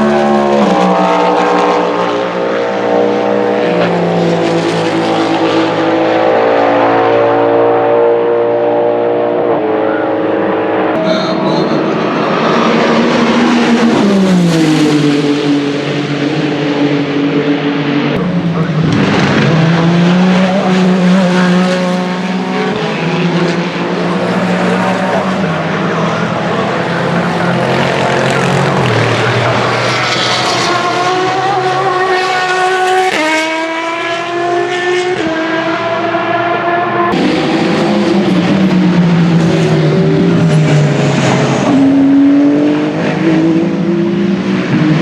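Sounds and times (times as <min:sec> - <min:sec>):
race car engines running hard: 0:00.0 - 0:45.0.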